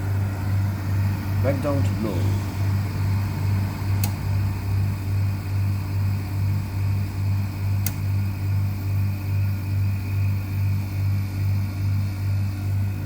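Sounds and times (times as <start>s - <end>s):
air conditioner fan humming: 0.0s - 13.0s
sharp click: 4.0s - 4.2s, 7.8s - 8.0s.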